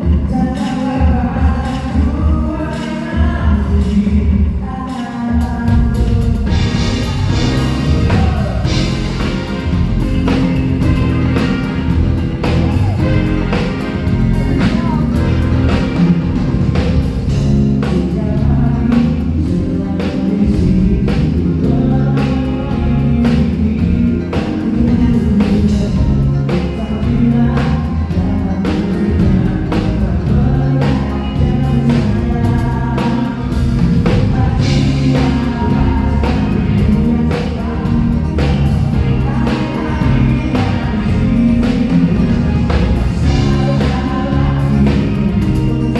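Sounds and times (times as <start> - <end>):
bass: 0.0 - 45.9
drum kit beat: 0.0 - 45.9
person singing: 0.0 - 45.9.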